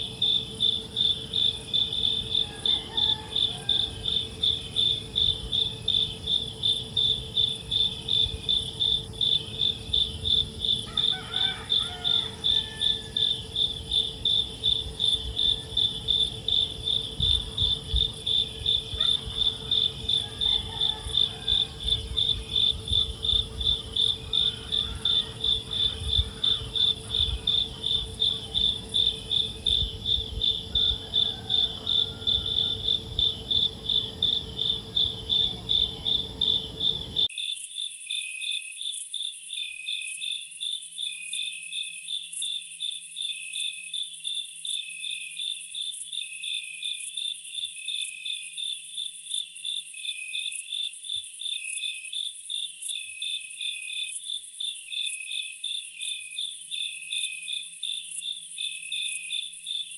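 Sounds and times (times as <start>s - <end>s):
cricket chirping: 0.0s - 59.9s
steady low hum: 12.2s - 37.3s.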